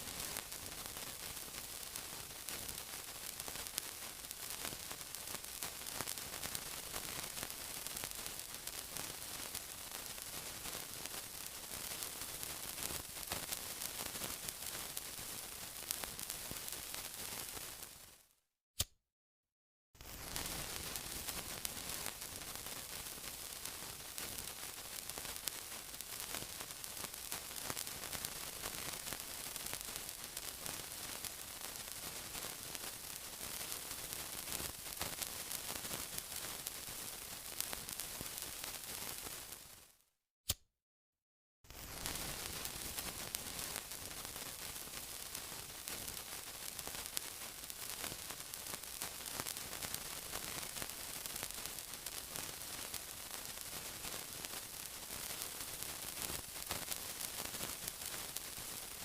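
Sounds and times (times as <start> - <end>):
sizzling with crackles: 0.0 - 18.3, 20.0 - 40.0, 41.7 - 59.0
single click: 40.5 - 40.7.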